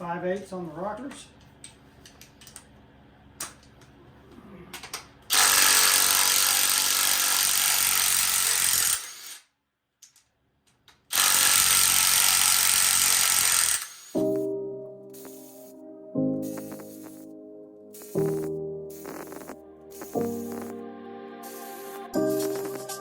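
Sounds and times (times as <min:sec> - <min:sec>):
power wrench spinning: 0:05.3 - 0:09.5, 0:11.1 - 0:14.4, 0:15.2 - 0:15.7, 0:16.5 - 0:17.2, 0:18.0 - 0:20.8, 0:21.5 - 0:23.0.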